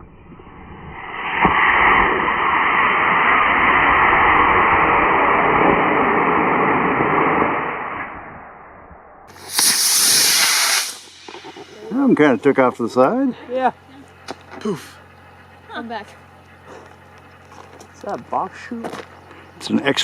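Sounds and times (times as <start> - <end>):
short loud hiss: 9.3 - 12.1.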